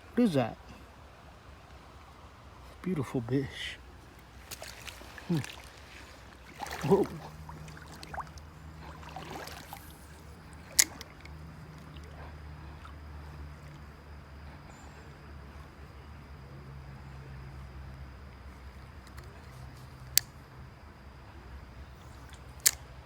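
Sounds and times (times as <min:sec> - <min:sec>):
creek water trickling: 0:00.0 - 0:15.8, 0:21.8 - 0:22.9.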